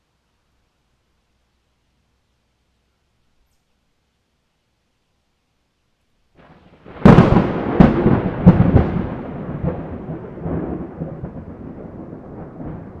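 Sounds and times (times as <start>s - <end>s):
rolling thunder rumble: 6.4s - 13.0s
thunder cracks: 6.4s - 13.0s.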